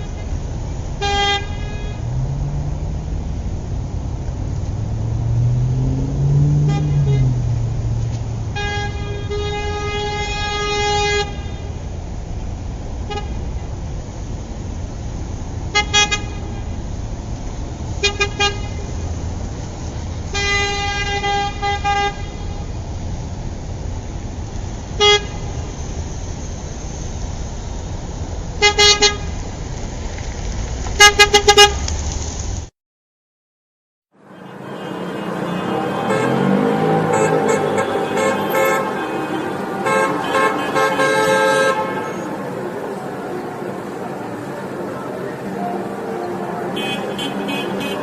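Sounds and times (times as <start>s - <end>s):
traffic rumble: 0.0s - 32.7s, 34.1s - 48.0s
car horn honking: 1.0s - 2.5s, 5.8s - 11.8s, 15.7s - 16.8s, 20.3s - 22.6s, 25.0s - 25.5s, 28.6s - 29.3s, 34.2s - 48.0s.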